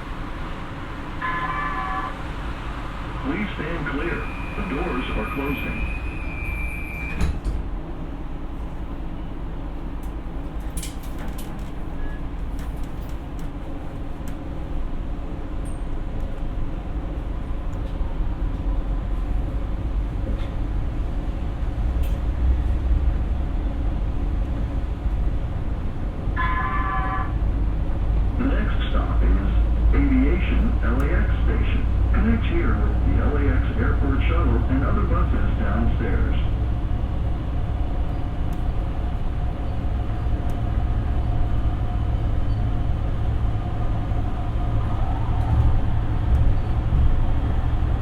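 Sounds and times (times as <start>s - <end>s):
train rumbling: 0.0s - 48.0s
door warning tone: 1.2s - 2.3s, 26.4s - 27.4s
train doors knocking shut: 7.1s - 7.7s.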